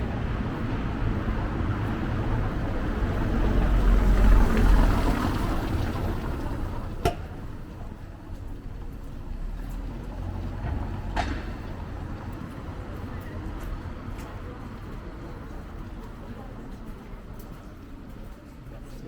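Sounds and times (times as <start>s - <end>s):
motor vehicle passing: 0.0s - 15.5s.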